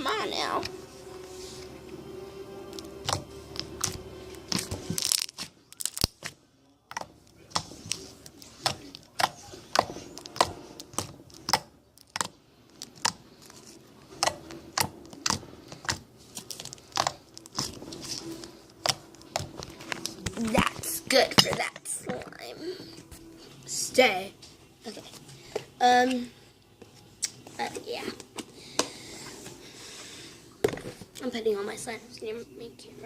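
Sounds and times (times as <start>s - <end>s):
hands squishing slime: 3.0s - 21.6s.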